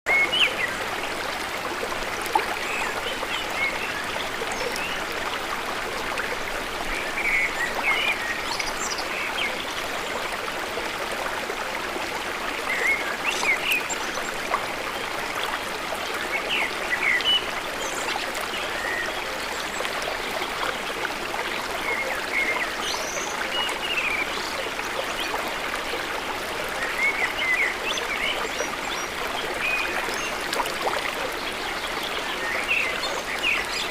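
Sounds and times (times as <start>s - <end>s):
running water rushing: 0.1s - 33.9s.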